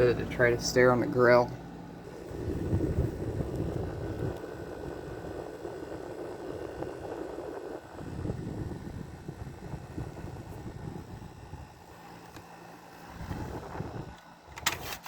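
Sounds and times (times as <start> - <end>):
air conditioner fan rushing: 0.0 - 15.0
compressor low hum: 0.0 - 15.0.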